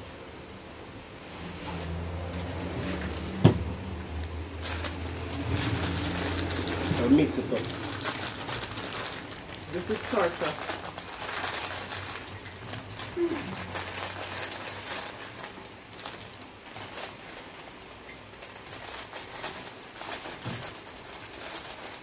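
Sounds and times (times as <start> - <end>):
packaging clicks and crinkling: 1.7 - 22.0.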